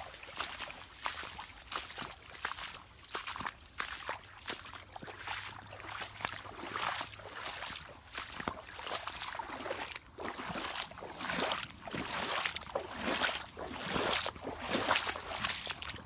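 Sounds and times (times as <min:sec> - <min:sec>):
water splashing and sloshing: 0:00.0 - 0:16.0.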